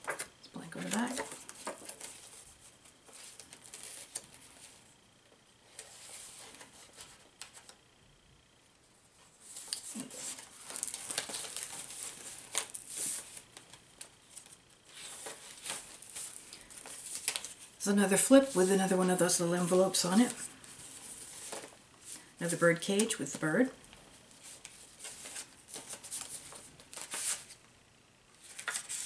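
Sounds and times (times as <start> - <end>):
paper rustling and crinkling: 0.0 - 4.8, 5.7 - 7.8, 9.3 - 19.1, 20.1 - 22.2, 24.3 - 27.6, 28.4 - 29.0.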